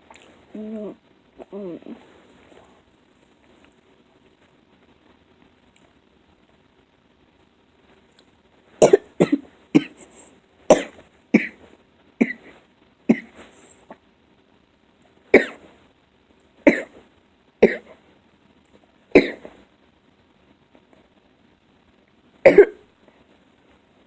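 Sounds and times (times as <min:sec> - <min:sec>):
person coughing hard: 0:08.8 - 0:11.6, 0:12.2 - 0:12.5, 0:13.1 - 0:13.4, 0:15.4 - 0:15.6, 0:16.7 - 0:16.9, 0:17.6 - 0:17.9, 0:19.2 - 0:19.5, 0:22.4 - 0:22.8.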